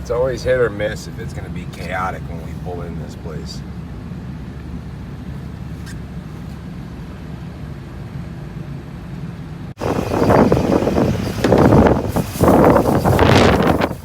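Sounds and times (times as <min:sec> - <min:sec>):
vehicle driving rumble: 0:00.0 - 0:14.0
wind gusting on microphone: 0:09.8 - 0:14.0.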